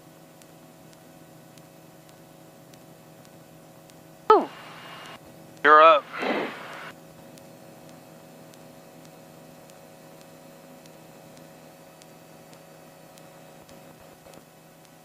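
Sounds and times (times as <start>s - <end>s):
intercom electrical hum and hiss: 0.0s - 15.0s
faint ticks: 0.3s - 4.0s, 7.3s - 15.0s.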